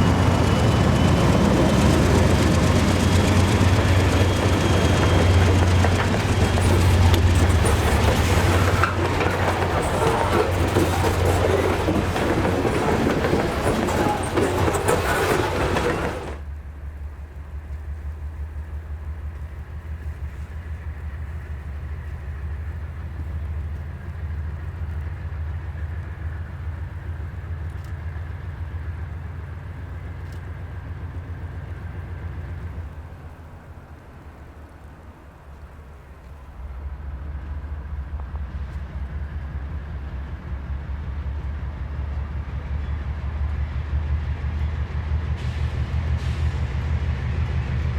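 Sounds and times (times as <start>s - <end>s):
coal train clattering past: 0.0s - 47.9s.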